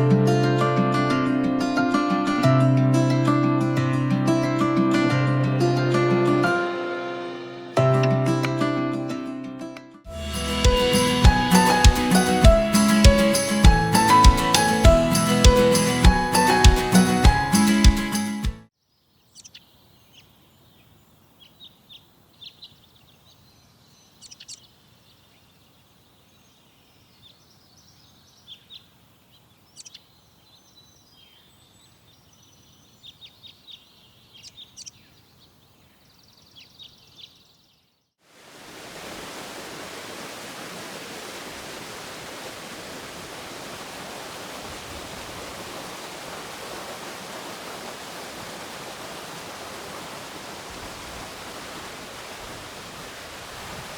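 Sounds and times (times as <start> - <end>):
rushing water: 10.1 - 18.6, 38.2 - 53.9.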